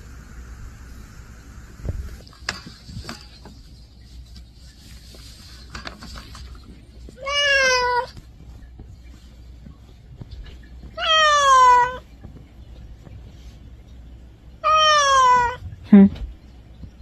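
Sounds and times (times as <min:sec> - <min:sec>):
cat meowing: 0:07.2 - 0:08.2, 0:11.0 - 0:12.0, 0:14.6 - 0:15.6.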